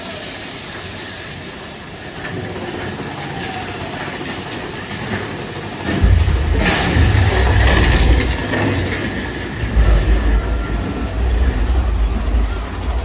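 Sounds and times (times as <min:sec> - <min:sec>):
roller coaster wheels clattering: 0:00.0 - 0:13.0
loud low rumble: 0:05.9 - 0:13.0.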